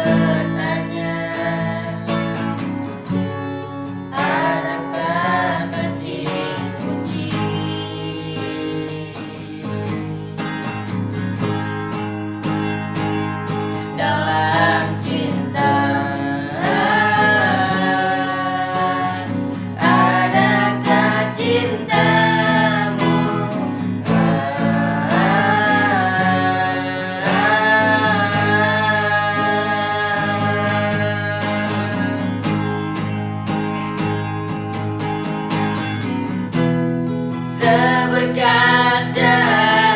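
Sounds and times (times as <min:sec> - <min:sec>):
person singing: 0:00.0 - 0:02.6, 0:04.1 - 0:10.2, 0:14.0 - 0:33.0, 0:37.5 - 0:39.9
strummed acoustic guitar: 0:00.0 - 0:39.9.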